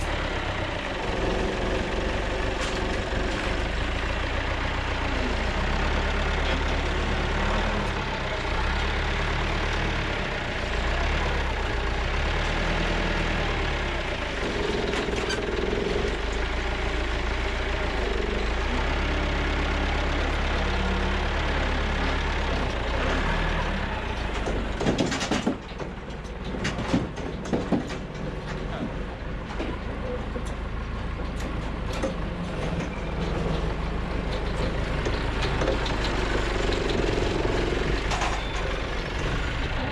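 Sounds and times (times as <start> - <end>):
tractor engine running: 0.0 - 39.9
sharp knocks and clicks: 24.2 - 30.6, 31.2 - 38.8.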